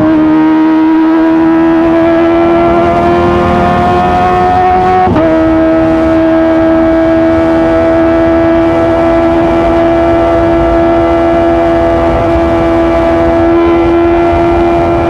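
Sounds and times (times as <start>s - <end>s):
motorcycle engine at high revs: 0.0s - 15.0s.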